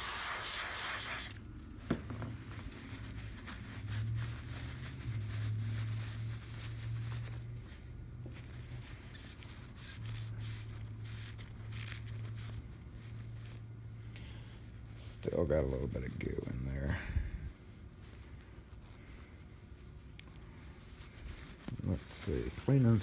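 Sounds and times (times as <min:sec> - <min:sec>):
loud hiss: 0:00.0 - 0:01.4
low steady hum: 0:01.3 - 0:23.0.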